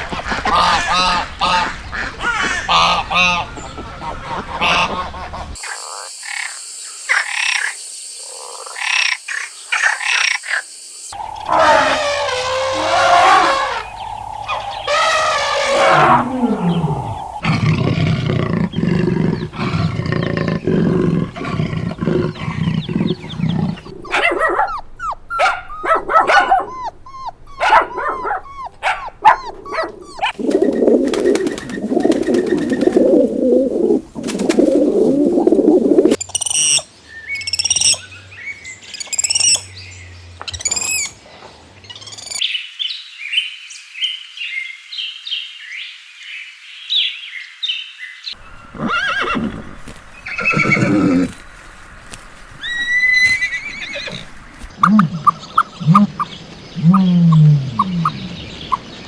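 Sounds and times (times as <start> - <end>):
animal calls: 0.0 - 5.6, 11.2 - 36.8, 48.7 - 51.4, 52.6 - 58.8
high rapid bird chirps: 11.2 - 17.4, 22.6 - 33.0
low animal roaring: 11.2 - 24.1.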